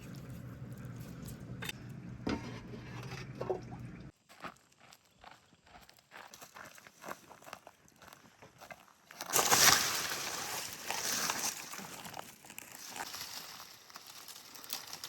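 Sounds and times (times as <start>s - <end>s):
rustling and crunching: 0.0s - 4.6s, 8.7s - 15.0s.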